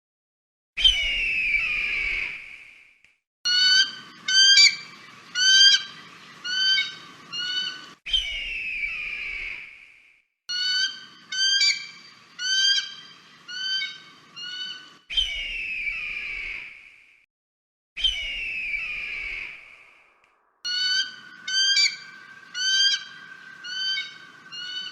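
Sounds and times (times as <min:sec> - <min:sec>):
eagle calling: 0:20.7 - 0:24.9.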